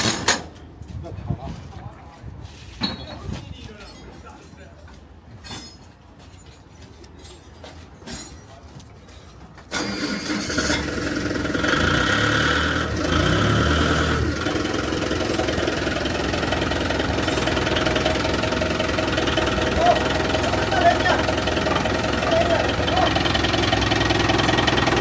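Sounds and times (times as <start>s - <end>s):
heavy machine engine running: 9.7s - 25.0s.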